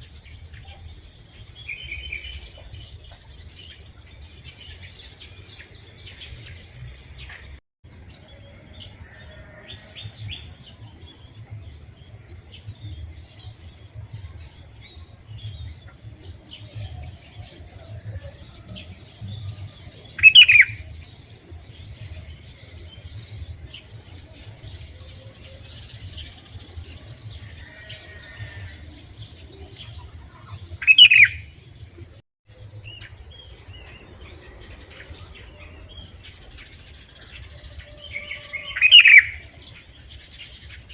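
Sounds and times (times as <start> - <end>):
faint chirps: 0.0 - 40.9
insects droning: 0.0 - 40.9
bulbul calls: 20.1 - 20.8, 29.9 - 31.4, 38.2 - 39.5.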